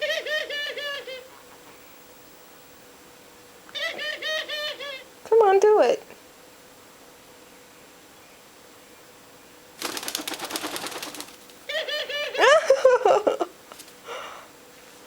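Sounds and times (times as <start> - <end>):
dove wings flapping: 9.8 - 11.8.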